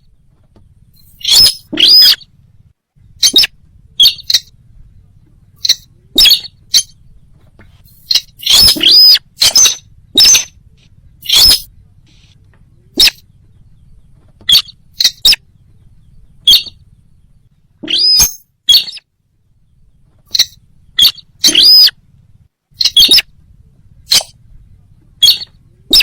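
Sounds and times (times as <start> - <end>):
sharp bird calls: 0.0 - 23.4, 24.0 - 26.0
faint low hum: 0.0 - 26.0
whistled bird note: 0.9 - 2.3, 3.2 - 4.5, 5.6 - 7.0, 7.9 - 10.6, 11.2 - 13.3, 16.4 - 16.8, 17.8 - 19.1, 20.3 - 22.0, 22.8 - 23.3, 25.2 - 26.0.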